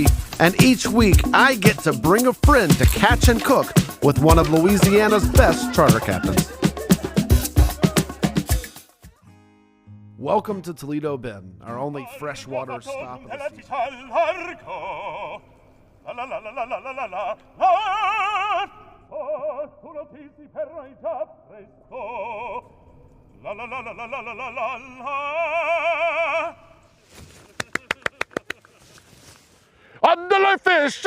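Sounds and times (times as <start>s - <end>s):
operatic singing voice: 0.0s - 8.8s, 11.7s - 26.9s.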